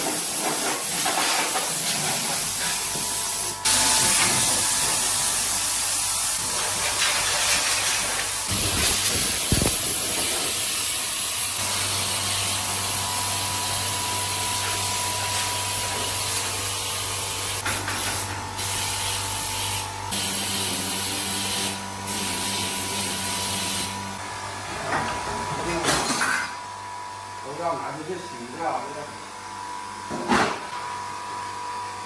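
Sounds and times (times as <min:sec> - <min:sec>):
hissing spray: 0:00.0 - 0:13.0
low motor hum: 0:08.4 - 0:16.2.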